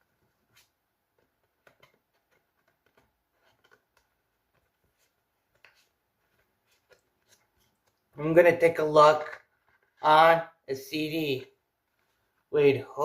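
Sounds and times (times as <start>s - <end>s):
paper and cardboard rustling: 0.0s - 8.1s.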